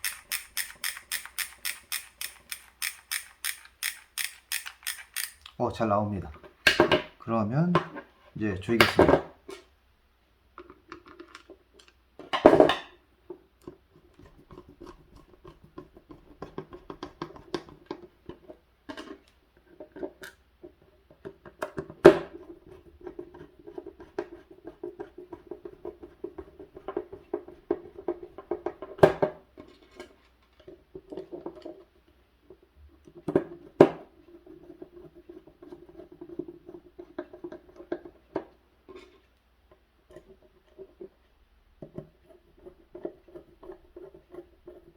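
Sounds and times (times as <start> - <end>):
screwdriver clicking and scratching: 0.0 - 5.6.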